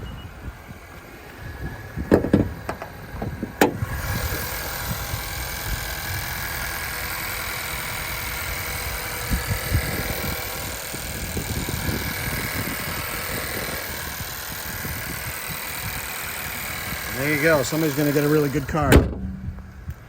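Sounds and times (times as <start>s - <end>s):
car engine idling: 0.3s - 20.0s
car hood latch clicks: 2.1s - 3.8s, 18.9s - 20.0s.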